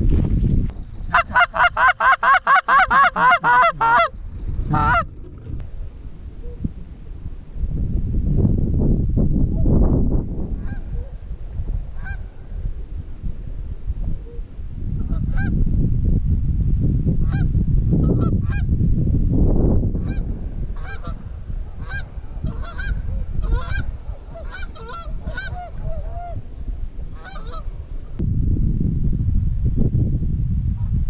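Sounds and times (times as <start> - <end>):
wind rumble on microphone: 0.0 - 31.0
geese honking: 1.1 - 5.1, 12.0 - 12.2, 20.8 - 21.2, 21.8 - 26.4, 27.2 - 27.7.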